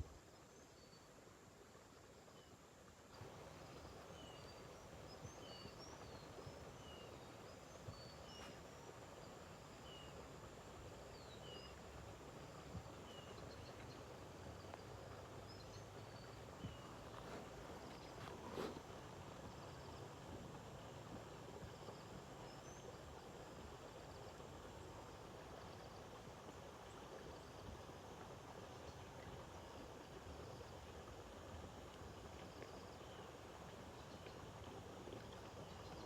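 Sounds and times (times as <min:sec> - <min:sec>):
soft background hiss: 0:00.0 - 0:36.0
small birds chirping: 0:12.5 - 0:18.8.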